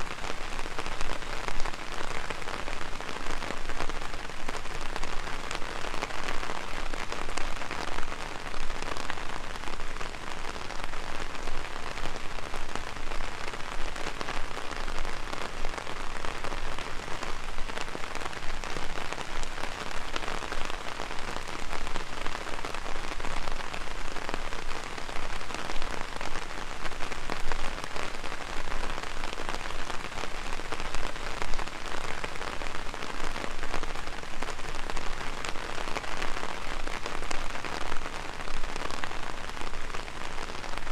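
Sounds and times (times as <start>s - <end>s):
heavy rain on umbrella: 0.0s - 40.9s.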